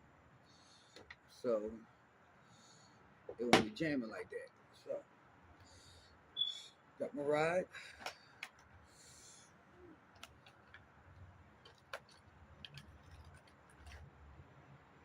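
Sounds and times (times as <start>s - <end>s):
faint clicks and taps: 10.1s - 14.1s.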